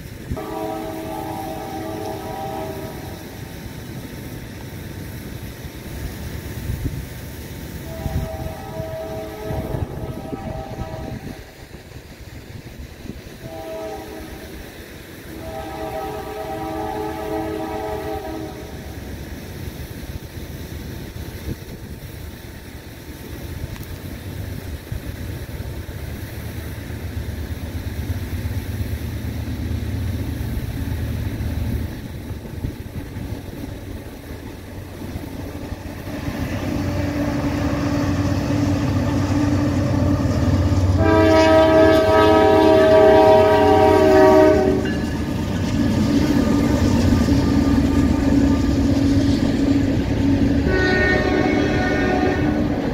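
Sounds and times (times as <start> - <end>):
locomotive engine rumble: 0.0 - 52.9
train air horn chord: 0.3 - 3.5, 7.8 - 11.4, 13.4 - 14.6, 15.3 - 18.9, 36.8 - 45.2, 50.6 - 52.8.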